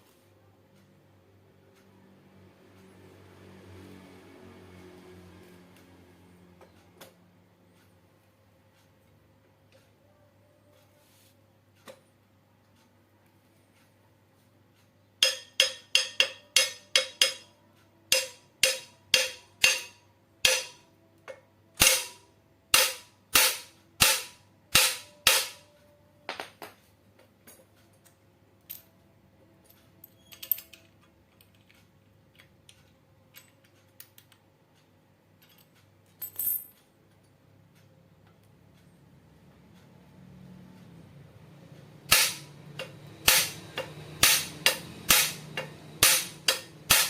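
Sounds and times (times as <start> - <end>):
hammering on metal: 15.2 - 21.0, 21.8 - 26.7, 42.1 - 47.0.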